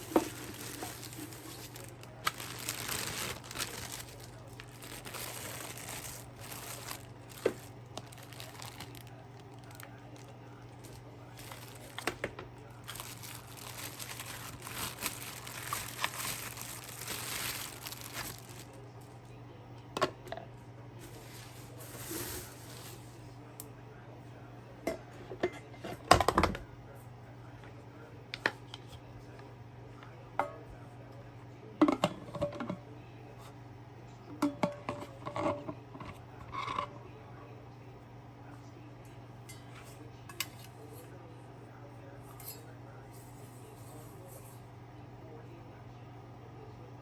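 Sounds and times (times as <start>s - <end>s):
plastic packaging crinkling: 0.0s - 18.8s, 21.0s - 23.1s.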